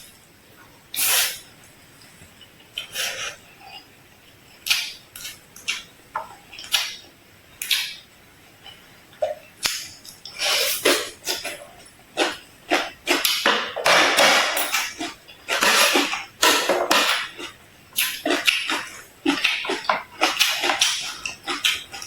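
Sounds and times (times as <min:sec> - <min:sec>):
crunchy chewing: 0:14.7 - 0:22.0.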